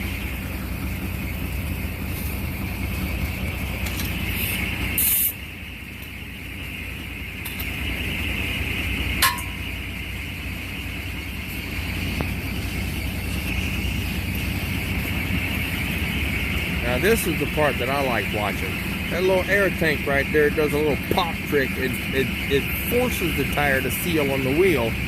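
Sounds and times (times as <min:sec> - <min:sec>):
diesel engine idling: 0:00.0 - 0:25.0
loud air hiss: 0:04.4 - 0:05.4.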